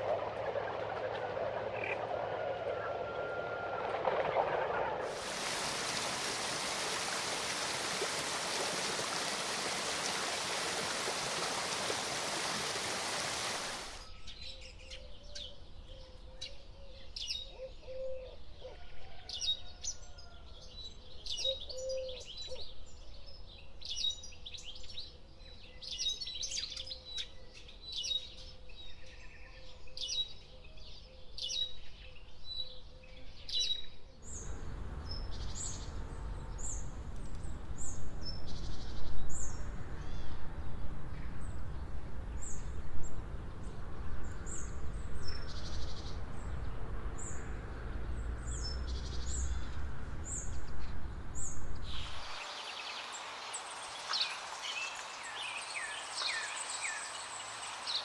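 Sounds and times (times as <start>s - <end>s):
bird chirping: 44.3s - 58.0s.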